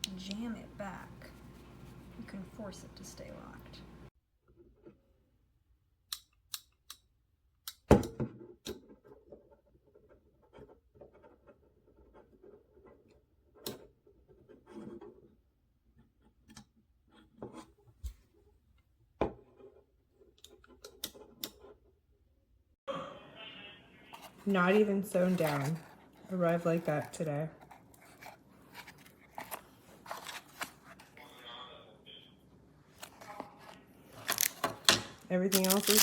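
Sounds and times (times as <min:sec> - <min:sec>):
soft rubbing and rustling: 0:00.9 - 0:02.5.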